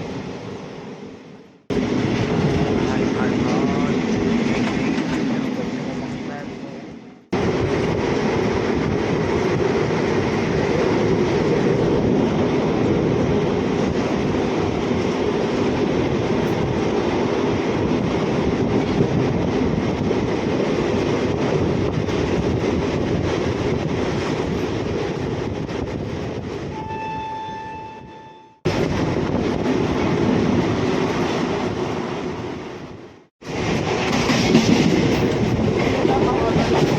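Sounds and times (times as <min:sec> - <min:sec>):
train rumbling: 0:00.0 - 0:36.9
train horn: 0:26.7 - 0:28.6.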